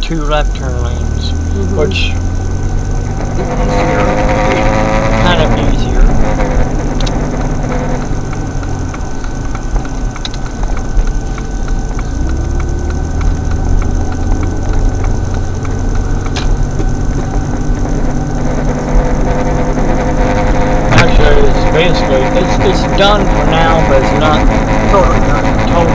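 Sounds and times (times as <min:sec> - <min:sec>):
engine and road hum: 0:00.0 - 0:25.9
turn signal relay clicking: 0:05.4 - 0:21.1.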